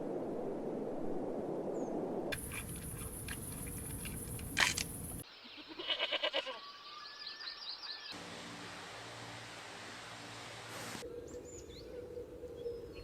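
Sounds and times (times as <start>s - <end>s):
lamb bleating: 5.6s - 6.6s.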